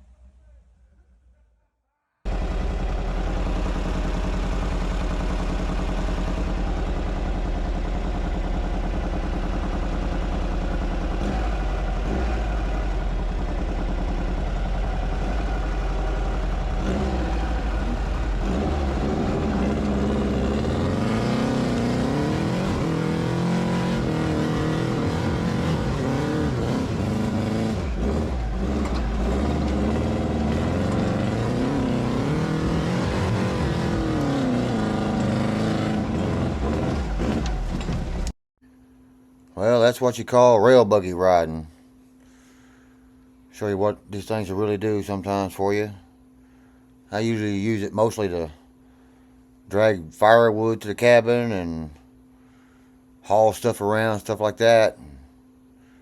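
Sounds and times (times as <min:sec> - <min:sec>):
buggy engine revving: 0:02.3 - 0:38.3.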